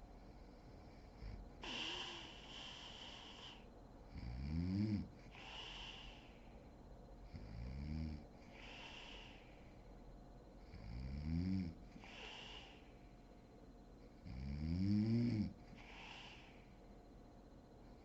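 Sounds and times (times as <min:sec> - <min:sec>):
woman snoring: 0:01.2 - 0:06.4, 0:07.4 - 0:09.5, 0:10.8 - 0:12.9, 0:14.2 - 0:16.7.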